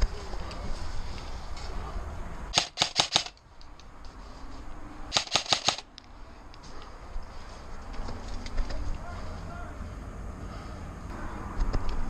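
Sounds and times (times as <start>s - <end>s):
airsoft gun bursts: 2.5s - 3.4s, 5.1s - 5.9s.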